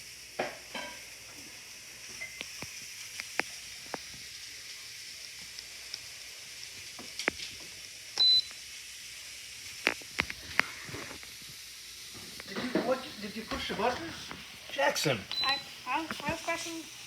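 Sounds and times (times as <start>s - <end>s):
faint steady hiss: 0.0s - 17.0s
short high beep: 15.3s - 15.6s.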